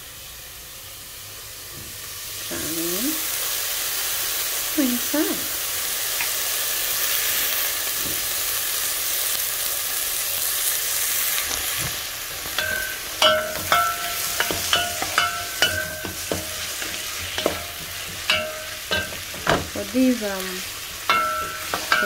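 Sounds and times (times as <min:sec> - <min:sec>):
onions sizzling in oil: 0:00.0 - 0:22.0
metal spoon clinking on pot: 0:12.6 - 0:19.6, 0:21.1 - 0:22.0.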